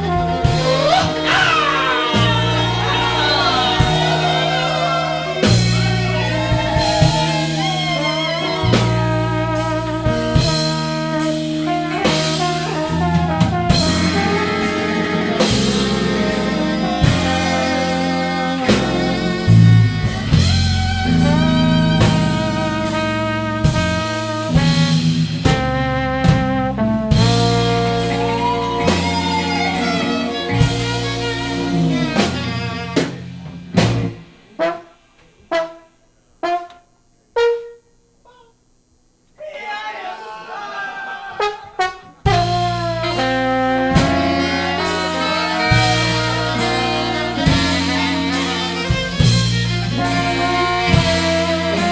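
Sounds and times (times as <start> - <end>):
sharp ensemble stabs: 0.0 - 25.8, 41.4 - 51.9
live band playing: 0.0 - 35.7, 41.6 - 51.9
note sliding down in pitch: 11.9 - 23.3.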